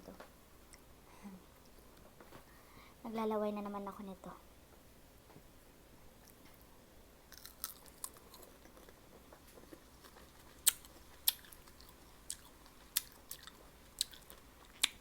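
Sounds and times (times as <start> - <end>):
person chewing wet smacks: 7.4 - 15.0.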